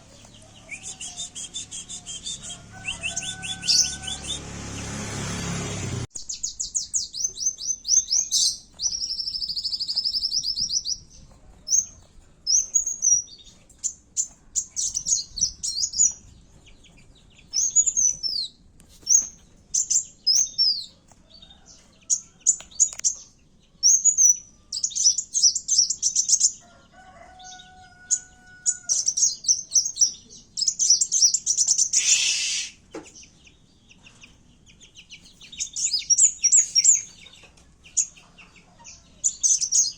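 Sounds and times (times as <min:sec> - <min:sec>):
bird chattering trills: 0:00.0 - 0:04.4, 0:28.7 - 0:32.8.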